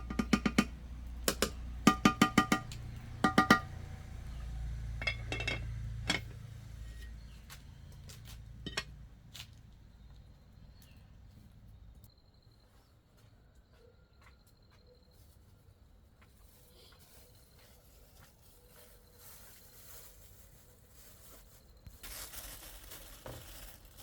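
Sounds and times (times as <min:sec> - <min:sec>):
low steady rumble: 0:00.0 - 0:10.0.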